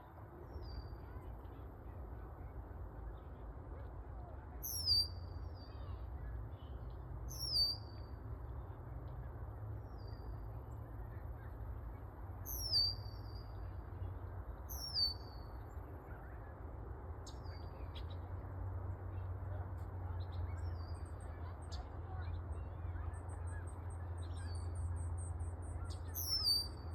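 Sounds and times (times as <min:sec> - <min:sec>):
songbird whistling calls: 0:12.5 - 0:13.2, 0:25.8 - 0:26.9.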